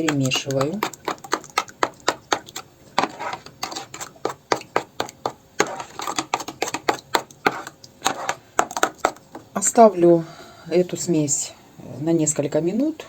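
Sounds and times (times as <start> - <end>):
utensil knocking against bowl: 0.0 - 9.5.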